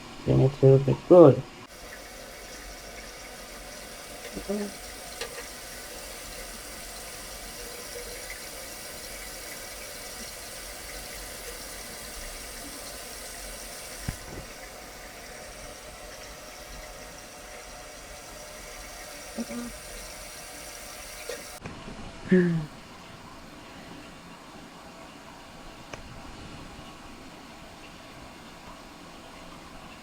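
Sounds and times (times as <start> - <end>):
water running into toilet tank: 0.4 - 21.6.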